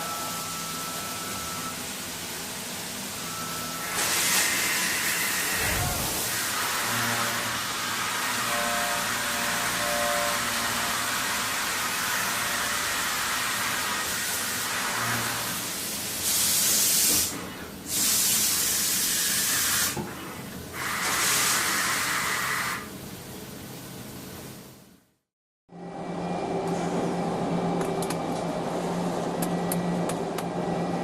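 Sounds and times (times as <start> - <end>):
mechanical hum: 0.0 - 31.0.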